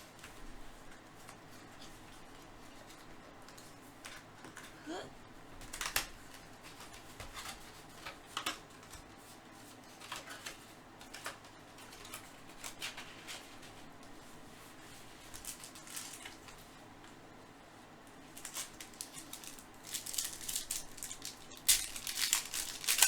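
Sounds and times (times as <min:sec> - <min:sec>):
packaging crinkling and rustling: 0:14.9 - 0:16.7, 0:18.2 - 0:23.0.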